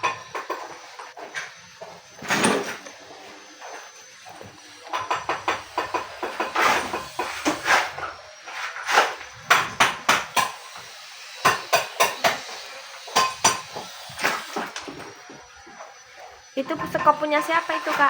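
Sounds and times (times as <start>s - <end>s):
hand tools knocking and clanking: 0.0s - 1.5s, 4.3s - 8.1s, 9.5s - 15.4s, 16.8s - 18.0s.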